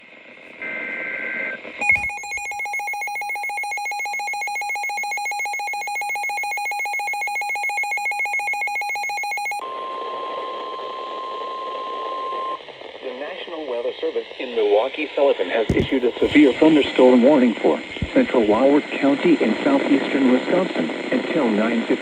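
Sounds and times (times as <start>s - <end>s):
steady high alarm tone: 1.8s - 9.9s.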